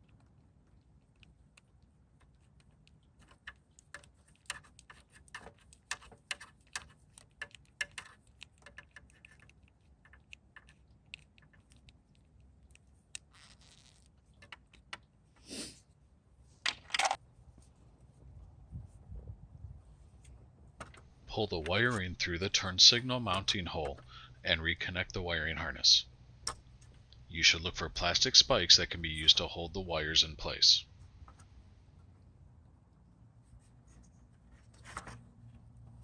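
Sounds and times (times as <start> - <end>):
rustle and scrape: 33.4 - 36.0.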